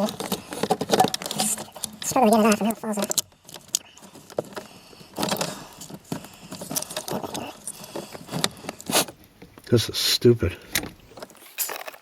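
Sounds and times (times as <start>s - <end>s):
metal parts jingling: 10.5s - 12.0s.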